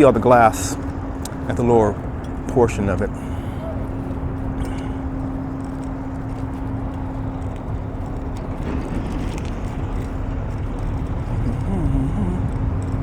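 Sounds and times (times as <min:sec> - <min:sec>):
constant low hum: 0:00.0 - 0:13.0
road traffic rumble: 0:00.0 - 0:13.0.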